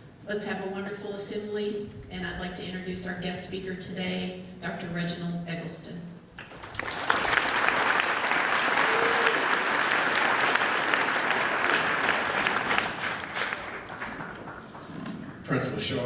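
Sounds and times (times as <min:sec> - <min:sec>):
audience applauding: 0:06.4 - 0:15.4.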